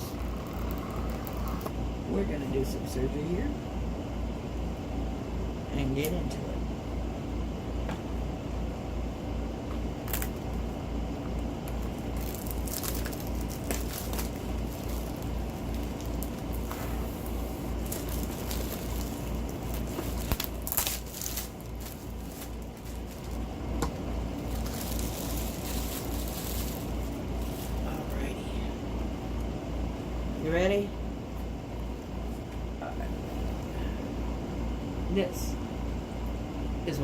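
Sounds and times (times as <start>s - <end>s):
pulsing low hum: 0.0s - 2.1s, 6.7s - 30.4s
packaging crinkling: 10.0s - 10.5s, 11.6s - 28.2s.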